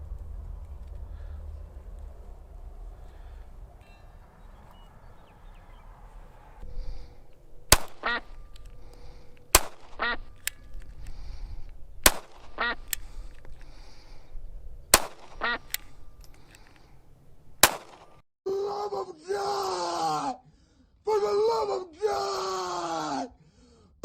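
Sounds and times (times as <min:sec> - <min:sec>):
pistol shots: 0:07.7 - 0:10.6, 0:12.0 - 0:13.1, 0:14.9 - 0:16.0, 0:17.6 - 0:18.2.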